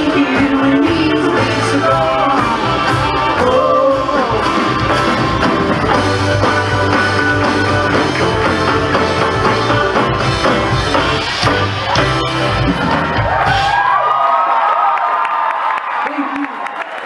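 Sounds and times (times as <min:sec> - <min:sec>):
upright bass low notes: 0:00.0 - 0:13.5
live band playing: 0:00.0 - 0:14.0.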